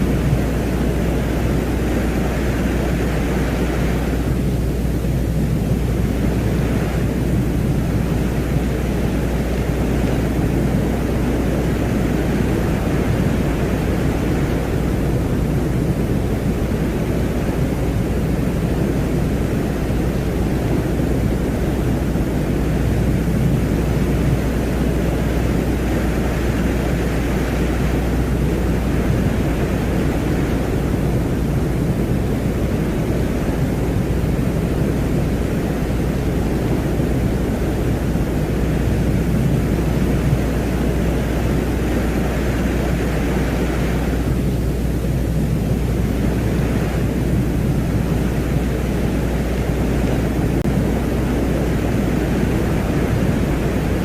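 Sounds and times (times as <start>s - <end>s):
constant low drone: 0.0s - 54.0s.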